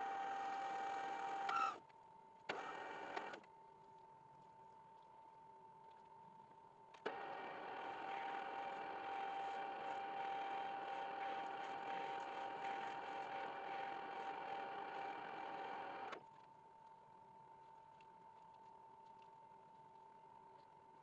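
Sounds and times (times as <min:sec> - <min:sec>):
electric motor running: 0:07.1 - 0:16.2.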